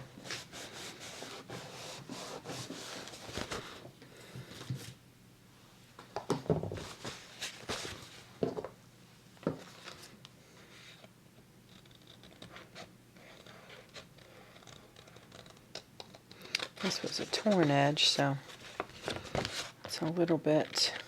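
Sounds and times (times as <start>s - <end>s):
paper rustling: 16.8s - 20.2s.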